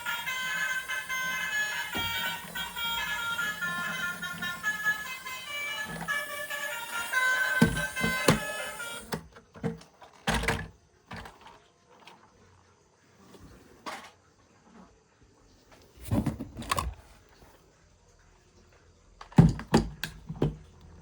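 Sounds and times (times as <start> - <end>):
toy vehicles knocking and clattering: 0.0 - 11.6.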